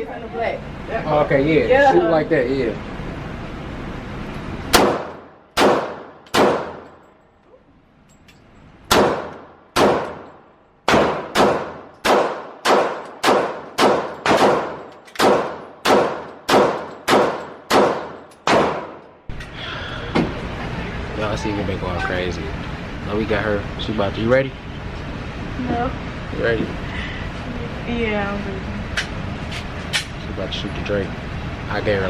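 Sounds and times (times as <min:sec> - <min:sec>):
gunshots with echo: 0:04.7 - 0:06.8, 0:08.9 - 0:10.3, 0:10.9 - 0:19.0.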